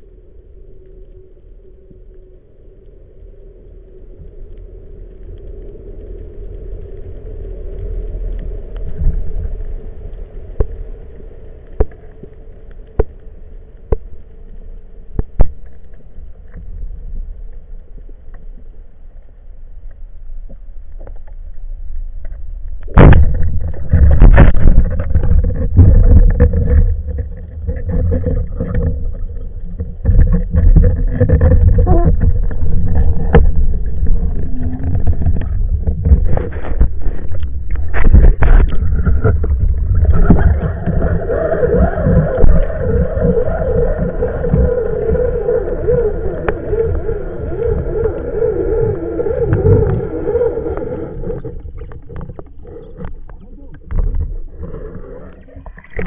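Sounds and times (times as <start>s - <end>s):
muffled underwater rumble: 0.0s - 56.0s
churning water: 22.9s - 56.0s.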